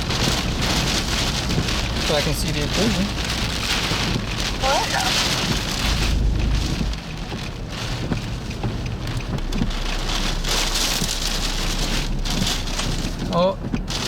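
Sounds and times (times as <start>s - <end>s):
heavy rain pelting a car: 0.0s - 14.0s
deep thunder rumble: 4.2s - 13.4s.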